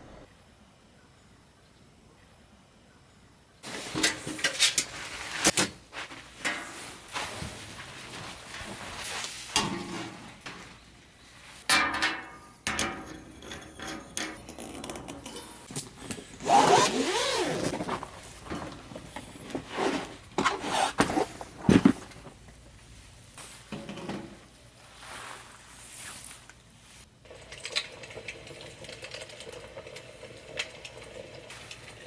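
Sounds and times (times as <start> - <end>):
objects being handled: 3.6 - 27.0.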